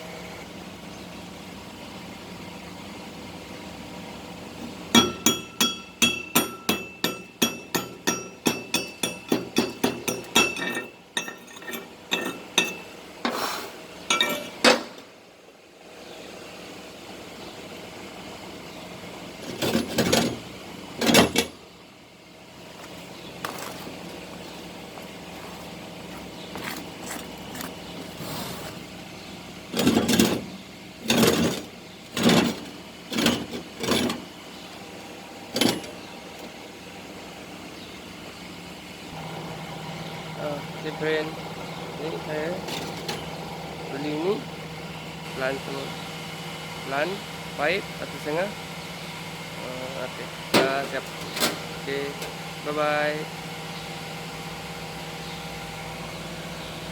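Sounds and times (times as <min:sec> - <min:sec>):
hammer ringing on steel: 0:05.0 - 0:11.4.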